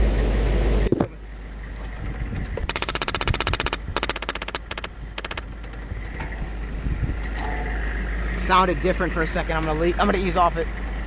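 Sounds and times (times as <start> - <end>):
airsoft gun firing bursts: 2.7 - 5.4.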